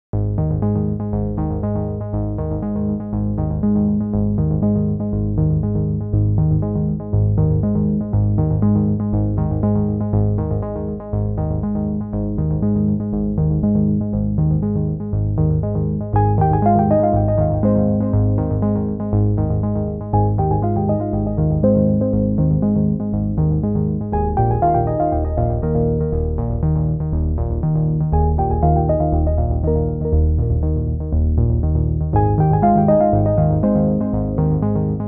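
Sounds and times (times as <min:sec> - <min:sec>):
repeating synthesizer music: 0:16.2 - 0:27.4, 0:28.0 - 0:35.0.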